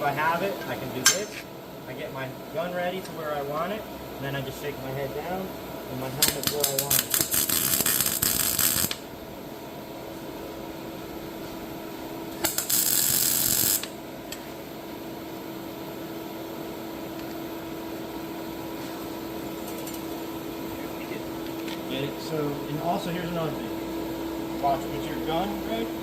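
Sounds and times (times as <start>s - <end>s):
welder humming: 5.2s - 9.2s, 11.6s - 14.8s
welder arc crackling: 6.1s - 9.1s, 12.3s - 14.5s.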